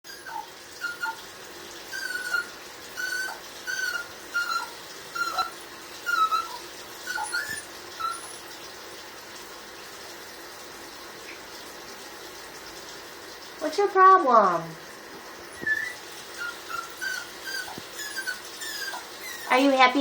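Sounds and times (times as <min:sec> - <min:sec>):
dog whining: 0:00.0 - 0:01.2, 0:01.9 - 0:08.6, 0:15.4 - 0:20.0.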